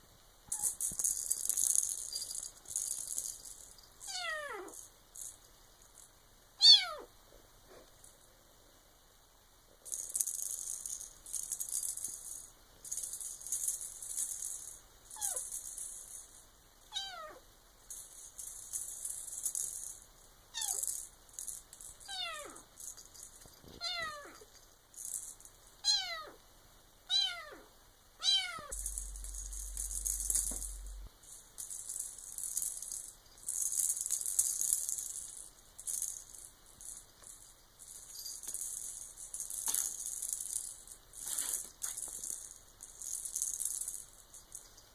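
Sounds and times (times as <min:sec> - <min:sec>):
high rattling toy: 0:00.5 - 0:06.2, 0:09.8 - 0:17.2, 0:17.8 - 0:26.2, 0:28.2 - 0:44.9
kitten meowing: 0:06.6 - 0:07.1, 0:28.2 - 0:28.8.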